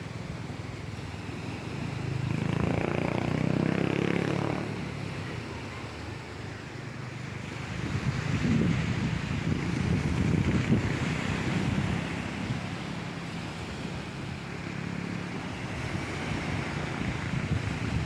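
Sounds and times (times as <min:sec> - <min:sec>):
sea surf washing in: 0:04.6 - 0:18.0
wind gusting on microphone: 0:07.4 - 0:18.0.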